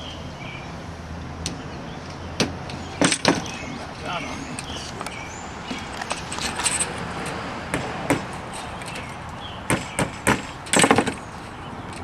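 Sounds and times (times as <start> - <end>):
tools clicking and knocking on metal: 2.7 - 9.1.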